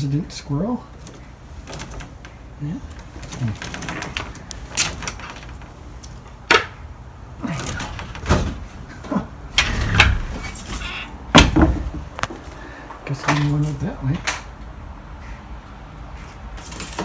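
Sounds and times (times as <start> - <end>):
low rumble: 9.5 - 10.8
sharp knocks and clunks: 9.6 - 12.4.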